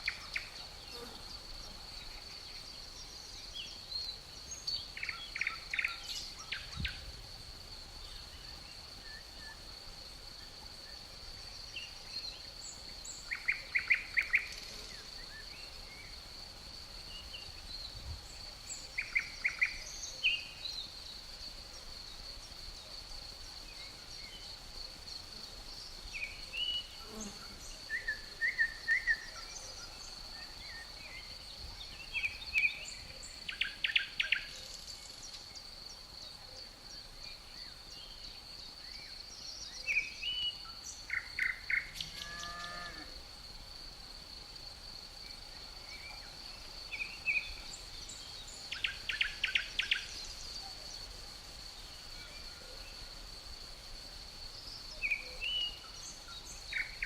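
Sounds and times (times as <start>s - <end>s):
high-pitched insect trill: 0.0s - 57.0s
songbirds chirping: 0.0s - 57.0s.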